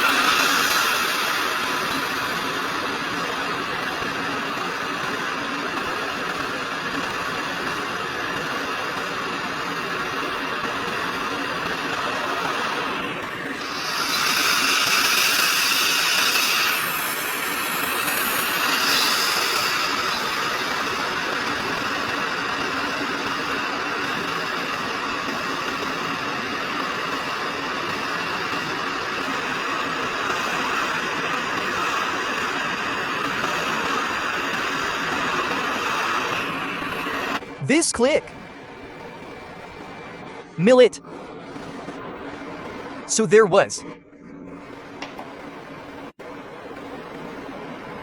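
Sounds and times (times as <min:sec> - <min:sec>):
hot-air blower hissing: 0:00.0 - 0:37.8.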